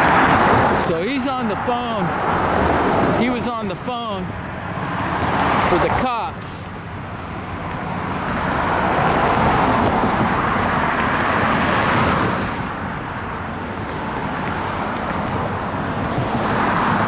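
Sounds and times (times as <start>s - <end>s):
car passing: 0.0s - 17.0s
vehicle approaching: 0.0s - 17.0s.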